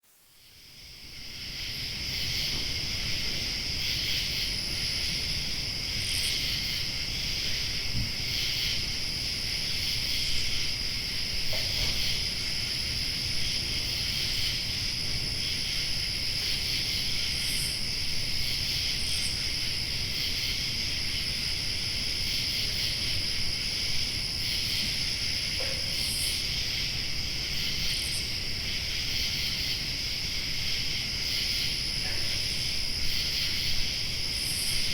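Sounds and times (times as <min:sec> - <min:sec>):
insect chorus trilling: 0:00.4 - 0:34.9.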